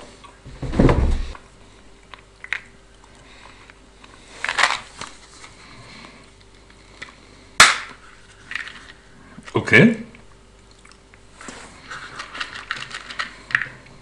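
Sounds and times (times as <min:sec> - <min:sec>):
candy packaging rustle: 0:04.2 - 0:05.7, 0:11.4 - 0:13.9.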